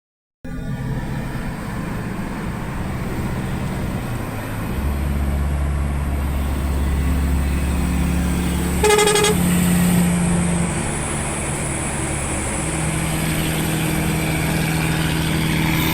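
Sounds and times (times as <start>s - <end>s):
engine deep rumble: 0.4s - 15.9s
vehicle horn toot: 8.4s - 9.6s.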